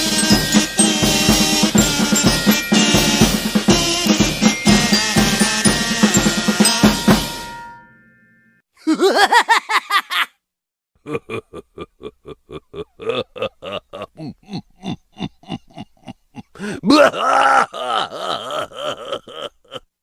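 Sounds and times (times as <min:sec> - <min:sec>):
cartoon giggles: 0:08.8 - 0:10.4, 0:11.0 - 0:19.9.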